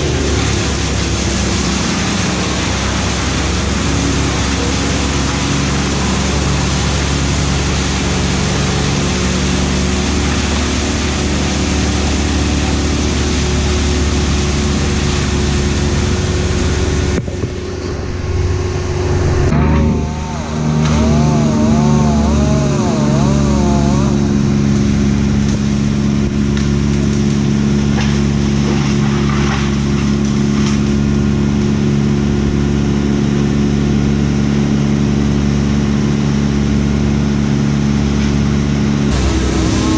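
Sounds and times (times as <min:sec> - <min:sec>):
engine running: 0:00.0 - 0:39.9
warbling tone: 0:15.8 - 0:25.3.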